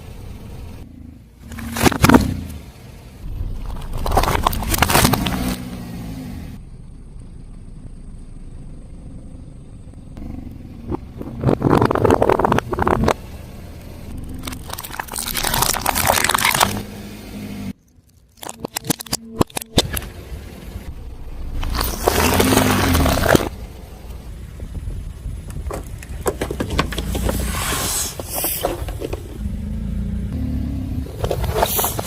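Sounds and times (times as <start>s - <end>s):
low car rumble: 0.0s - 32.0s
tyre crushing crunchy objects: 3.4s - 5.9s, 14.4s - 16.9s, 21.4s - 23.6s.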